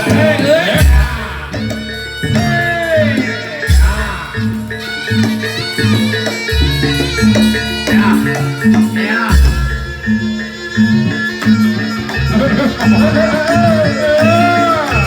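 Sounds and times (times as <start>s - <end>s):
low drum beats: 0.0s - 10.4s
stepped melody: 0.0s - 15.0s.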